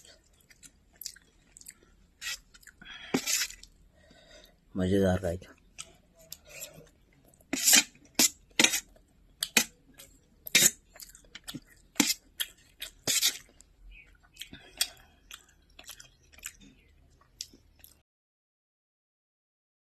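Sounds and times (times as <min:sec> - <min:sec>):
chewing with crunches: 0:00.0 - 0:03.8, 0:08.8 - 0:18.0.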